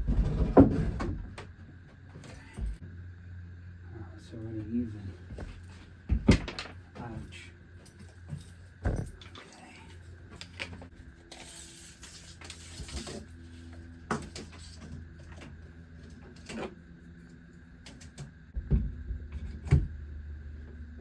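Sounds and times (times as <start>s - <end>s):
low steady hum: 0.0s - 21.0s.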